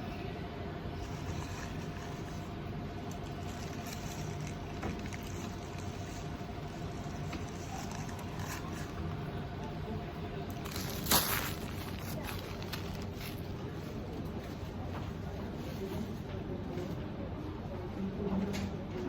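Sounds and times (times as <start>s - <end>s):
machine hum: 0.0s - 14.4s.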